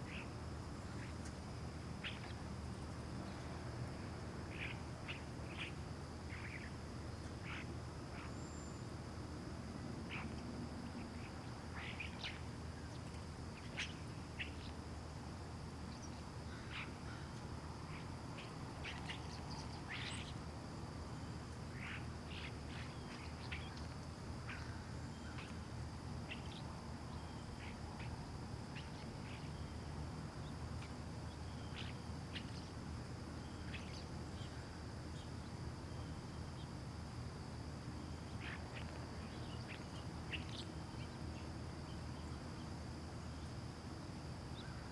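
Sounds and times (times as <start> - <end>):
small birds chirping: 0.0 - 1.3, 2.0 - 3.5, 4.5 - 8.9, 10.1 - 14.8, 15.8 - 20.5, 21.1 - 29.8, 30.4 - 32.8, 33.4 - 36.8, 38.0 - 42.4
faint high hiss: 0.0 - 44.9.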